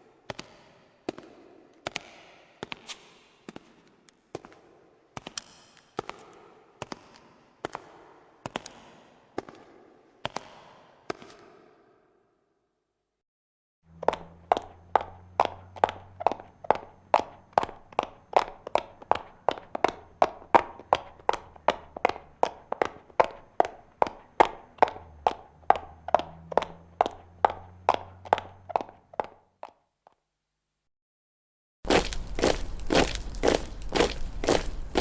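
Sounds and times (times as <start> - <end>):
high heels clicking: 13.9 - 30.2.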